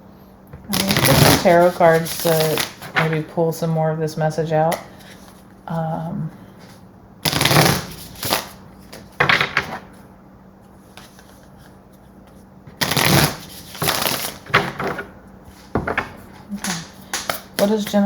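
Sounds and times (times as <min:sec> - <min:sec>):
cards being shuffled: 0:00.7 - 0:03.2, 0:07.2 - 0:09.9, 0:10.8 - 0:17.7.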